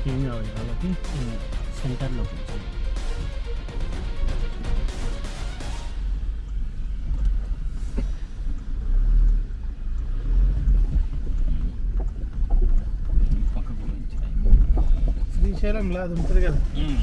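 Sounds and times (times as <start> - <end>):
engine rumbling off-road: 0.0 - 17.0.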